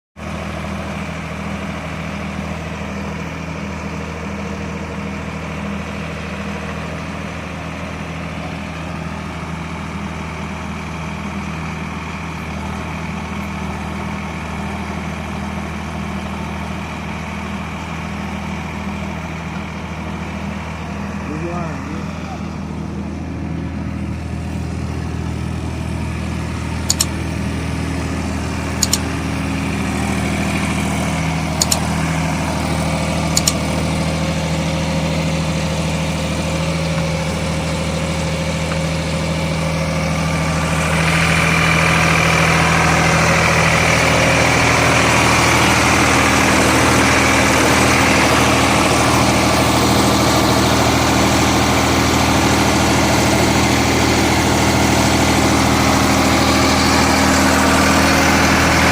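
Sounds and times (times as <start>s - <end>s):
tractor diesel engine running: 0.2s - 58.9s
short sharp clicks: 26.9s - 27.2s, 28.8s - 29.1s, 31.6s - 31.8s, 33.4s - 33.6s.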